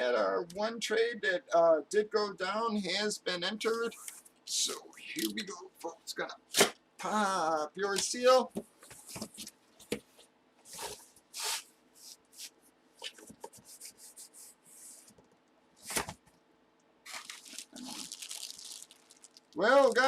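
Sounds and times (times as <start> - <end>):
loud rip of packaging: 17.0 - 20.0
packaging tearing and crinkling: 17.0 - 20.0.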